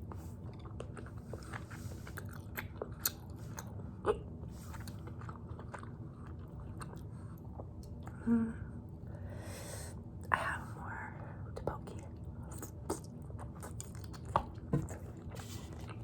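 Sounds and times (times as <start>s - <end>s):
wet chewing mouth sounds: 0.1s - 8.2s, 12.0s - 16.0s.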